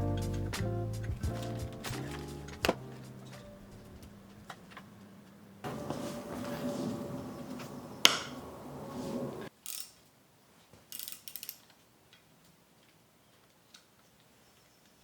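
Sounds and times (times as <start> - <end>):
steady background sound: 0.0 - 4.5
ratchet wrench clicking: 9.6 - 10.0, 10.9 - 11.7.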